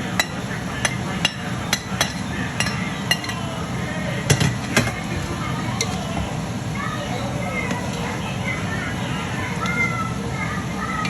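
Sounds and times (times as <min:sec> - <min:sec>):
steady background noise: 0:00.0 - 0:11.0
metal utensil clinking on pot: 0:00.1 - 0:03.5, 0:04.3 - 0:05.0.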